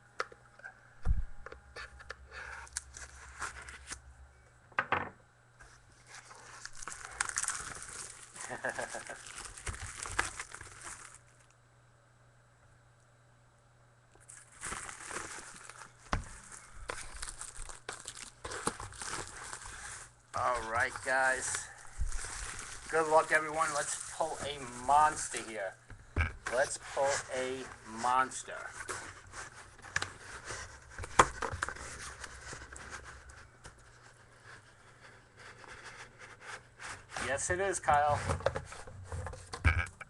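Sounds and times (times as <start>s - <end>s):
packaging rustling and crackling: 6.0s - 11.5s, 14.2s - 25.8s, 26.5s - 39.6s
plastic wrapping crinkling and tearing: 6.1s - 11.5s, 14.2s - 25.8s.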